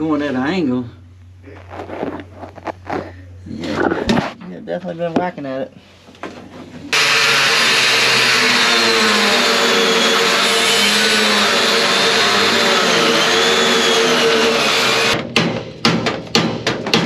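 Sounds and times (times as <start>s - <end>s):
angle grinder cutting metal: 6.9s - 15.2s.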